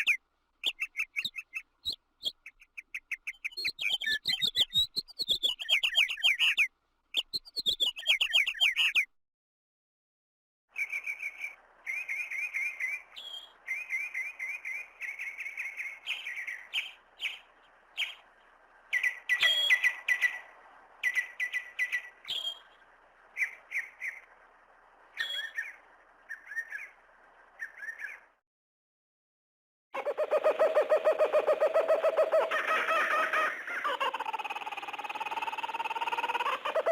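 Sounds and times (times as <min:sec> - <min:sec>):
faint steady hiss: 0:10.8 - 0:28.2.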